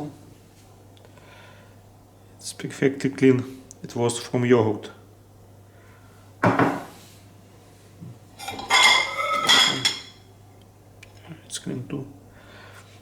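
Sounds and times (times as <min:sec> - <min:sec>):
dishes and cutlery clattering: 0:08.4 - 0:10.2.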